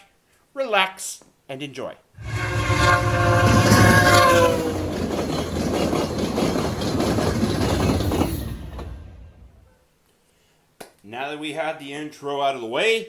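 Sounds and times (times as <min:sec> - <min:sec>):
train horn: 0:02.2 - 0:06.0
heavy rumble of passing train: 0:02.2 - 0:09.7.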